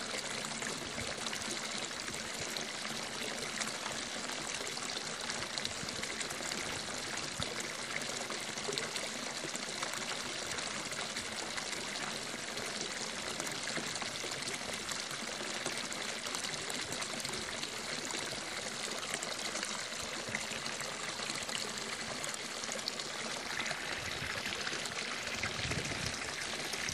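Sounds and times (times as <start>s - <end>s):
running water pouring and trickling: 0.0s - 26.9s.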